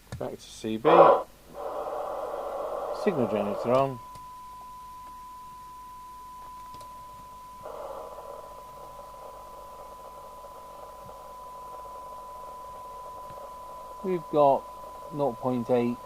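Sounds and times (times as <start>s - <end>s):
radio receiver hiss: 0.6s - 4.3s, 7.6s - 16.0s
steady test tone: 0.9s - 16.0s.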